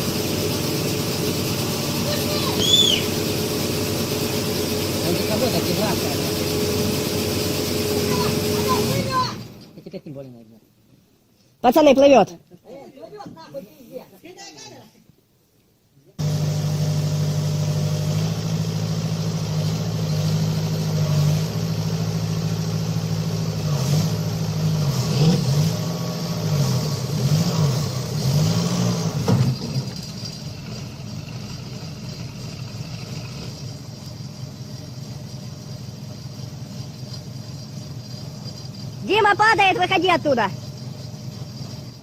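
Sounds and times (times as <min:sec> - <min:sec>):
heavy machine engine revving: 0:00.0 - 0:09.6, 0:16.2 - 0:39.1.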